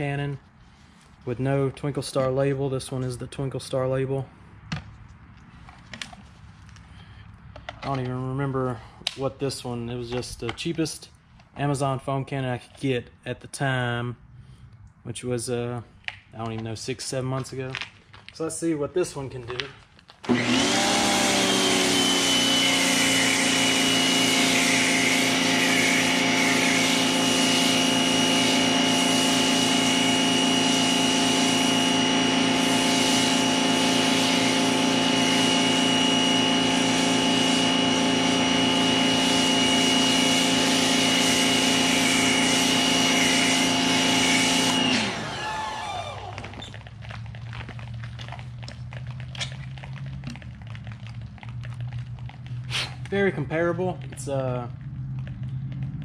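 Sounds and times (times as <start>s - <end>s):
pressure washer motor whining: 20.2s - 55.8s.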